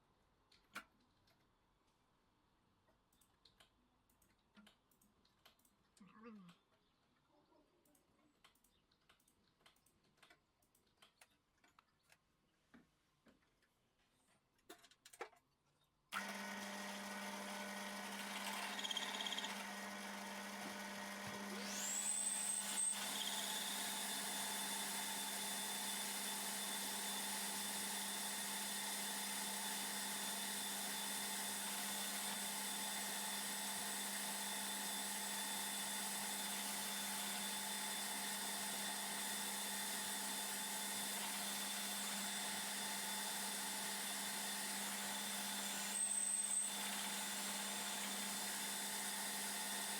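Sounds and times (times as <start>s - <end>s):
faint clicks: 7.8s - 12.2s
power tool motor humming: 16.2s - 49.9s.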